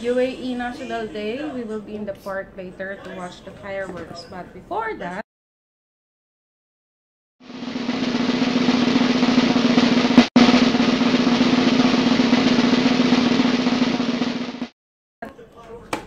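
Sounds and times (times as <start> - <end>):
snare drum roll: 7.4 - 14.7.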